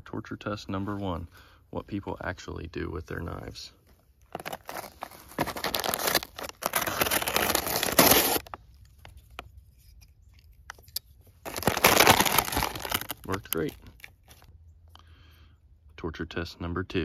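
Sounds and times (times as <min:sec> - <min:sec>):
knife tearing paper packaging: 0:04.4 - 0:08.6, 0:11.4 - 0:14.5.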